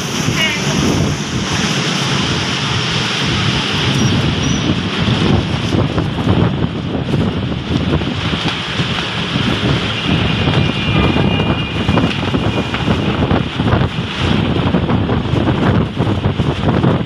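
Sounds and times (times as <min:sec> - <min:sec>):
storm wind buffeting microphone: 0:00.0 - 0:17.0.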